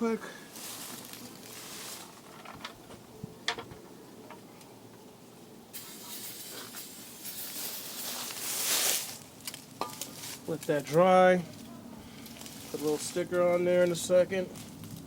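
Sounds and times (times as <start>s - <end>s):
aerosol spray hissing: 5.8s - 9.1s.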